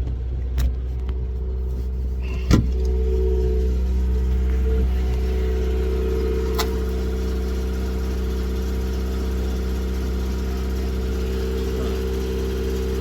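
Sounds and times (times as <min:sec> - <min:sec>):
engine idling: 0:00.0 - 0:13.0.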